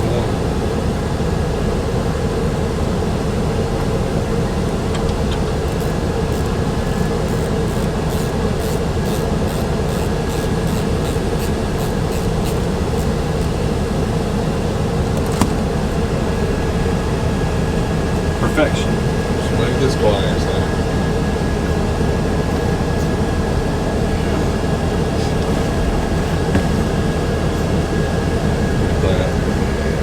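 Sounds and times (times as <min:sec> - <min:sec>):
steady mechanical hum: 0:00.0 - 0:30.0.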